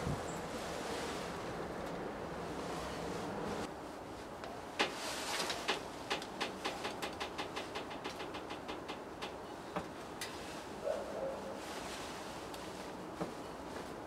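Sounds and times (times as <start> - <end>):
steady background noise: 0.0 - 14.0.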